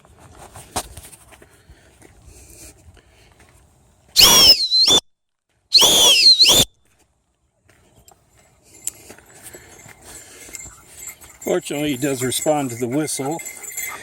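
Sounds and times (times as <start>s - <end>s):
loud sliding whistles: 4.2s - 5.0s, 5.7s - 6.7s.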